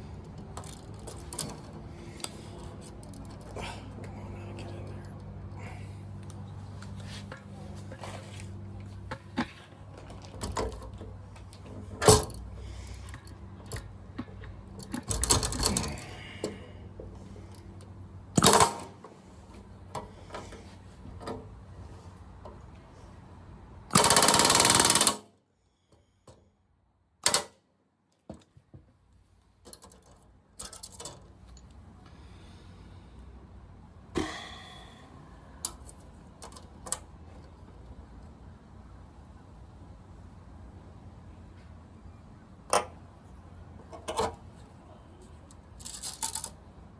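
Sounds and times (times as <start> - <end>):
metal parts clicking and knocking: 0.5 - 3.6, 9.4 - 16.6, 18.4 - 19.0, 23.9 - 25.2, 27.2 - 27.5, 29.6 - 31.8, 45.5 - 46.6.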